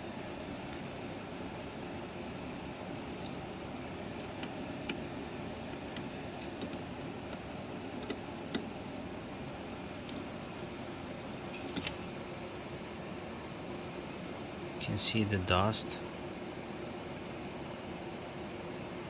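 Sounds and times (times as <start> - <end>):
steady low hum: 0.0 - 19.0
sharp clicks and taps: 5.7 - 7.4, 8.0 - 8.7.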